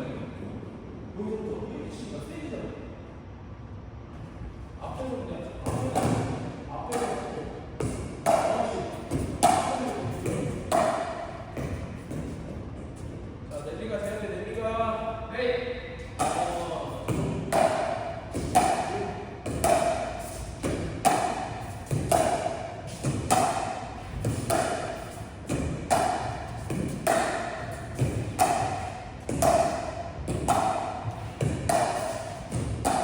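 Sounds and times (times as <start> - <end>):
paddles hitting plastic ball: 7.8 - 12.8, 16.2 - 33.0.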